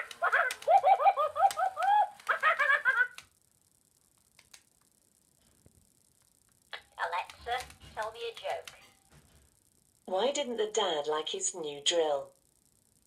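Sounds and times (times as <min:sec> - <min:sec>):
toy parrot squawking: 0:00.0 - 0:03.2.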